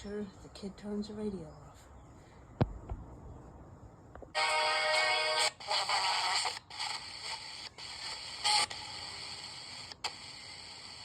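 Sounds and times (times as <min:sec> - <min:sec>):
toy radio through small speaker: 0:04.4 - 0:11.0.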